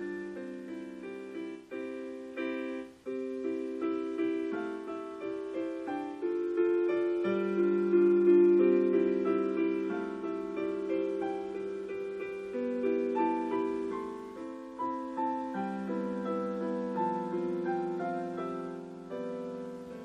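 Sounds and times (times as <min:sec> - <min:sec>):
gentle piano melody: 0:00.0 - 0:20.0.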